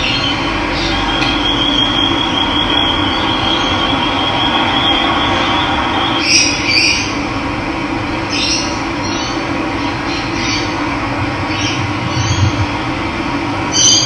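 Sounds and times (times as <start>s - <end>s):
birds scratchy calls: 13.6s - 14.0s.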